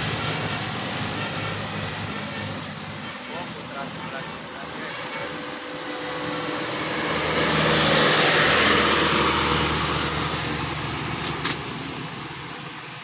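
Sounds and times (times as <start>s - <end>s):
vehicle driving past: 4.4s - 12.5s.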